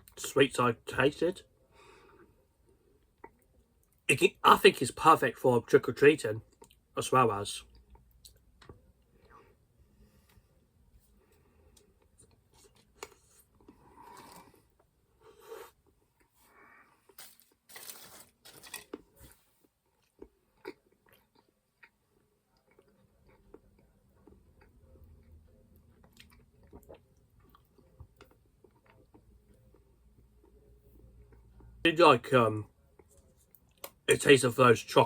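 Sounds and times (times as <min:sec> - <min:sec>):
chewing and crunching candy: 0:11.6 - 0:14.9, 0:15.9 - 0:31.7.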